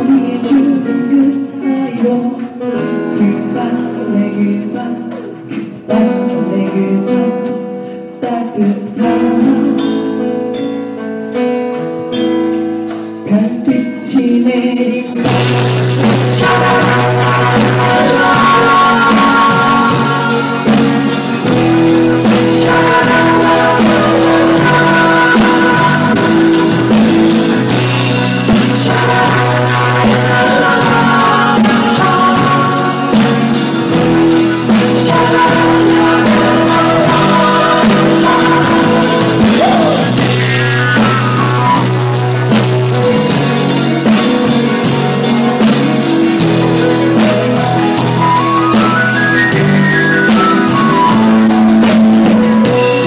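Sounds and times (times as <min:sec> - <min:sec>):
electric guitar: 0:00.0 - 0:53.0
live rock band playing: 0:00.0 - 0:53.0
bass guitar notes: 0:15.2 - 0:53.0
steady drum beat: 0:15.2 - 0:53.0.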